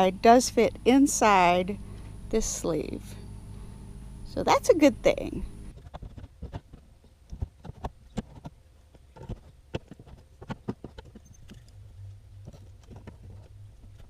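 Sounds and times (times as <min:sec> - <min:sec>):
low hum: 0:00.0 - 0:05.9, 0:11.2 - 0:14.0
hands tapping plastic parts: 0:05.8 - 0:11.7.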